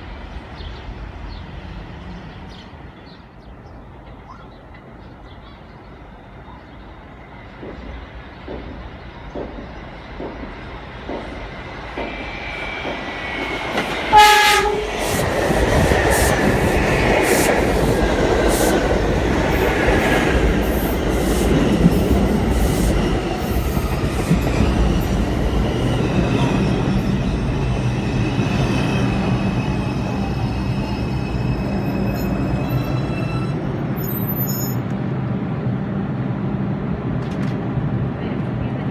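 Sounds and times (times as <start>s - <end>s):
subway train wheels clicking: 0.0s - 38.9s
train horn blast: 14.0s - 15.3s.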